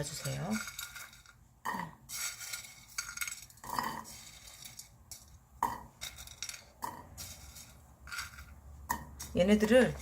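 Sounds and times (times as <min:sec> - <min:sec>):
utensil scraping noodles in a pan: 0:00.0 - 0:05.3, 0:07.1 - 0:08.7.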